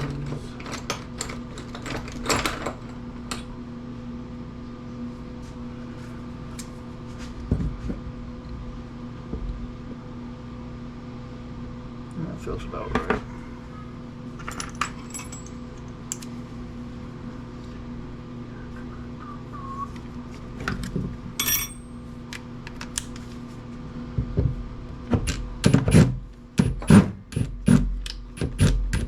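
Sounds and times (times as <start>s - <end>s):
steady low hum: 0.0s - 29.0s
small metal parts handled: 14.4s - 16.3s, 21.4s - 21.9s.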